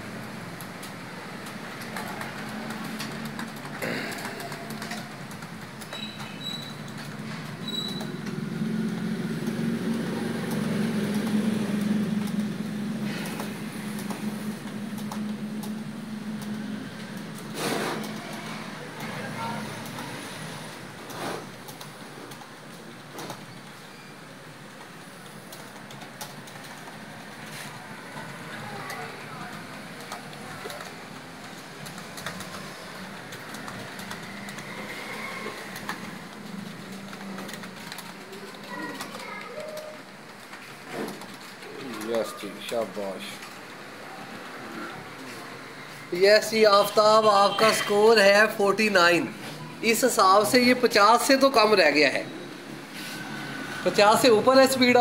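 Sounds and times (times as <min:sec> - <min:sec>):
street traffic: 0:00.0 - 0:55.0
computer keyboard typing clicks: 0:00.6 - 0:20.2, 0:21.5 - 0:23.8, 0:24.7 - 0:27.1, 0:28.1 - 0:43.8.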